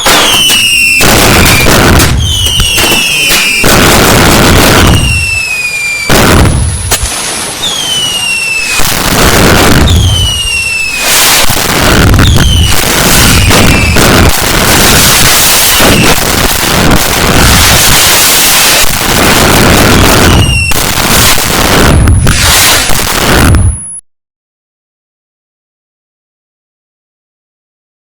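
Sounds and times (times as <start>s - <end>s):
fireworks bangs and crackle: 0.0s - 24.0s
whistling fireworks: 0.0s - 24.0s.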